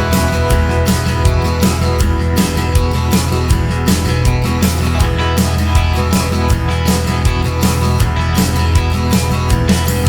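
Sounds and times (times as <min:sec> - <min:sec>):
rock music with guitar and drums: 0:00.0 - 0:10.0.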